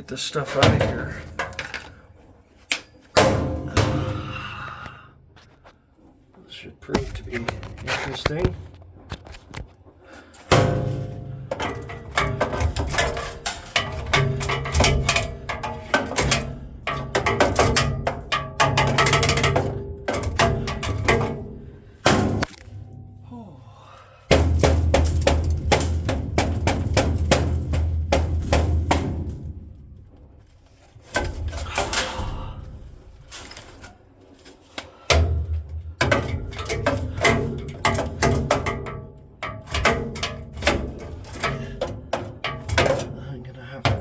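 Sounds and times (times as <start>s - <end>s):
metal clanking and scraping: 0.0s - 4.5s, 5.4s - 23.2s, 24.3s - 44.0s.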